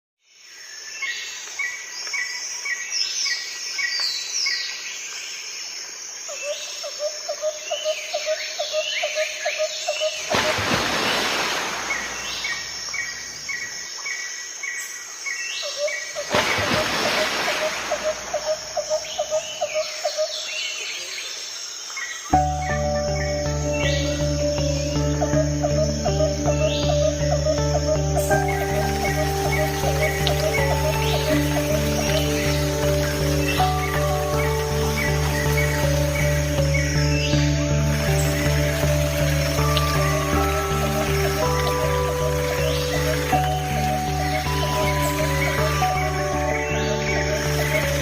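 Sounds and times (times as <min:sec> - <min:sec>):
birds calling and chirping: 0:06.3 - 0:48.0.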